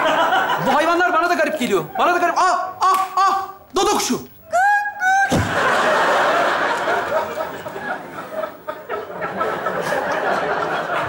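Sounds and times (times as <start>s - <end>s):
large audience laughing: 0.0s - 1.1s, 5.2s - 11.0s.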